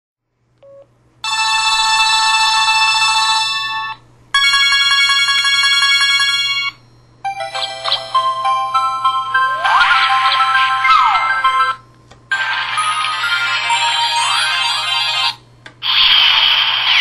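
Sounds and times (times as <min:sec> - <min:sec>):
electronic melody: 0:07.2 - 0:15.4.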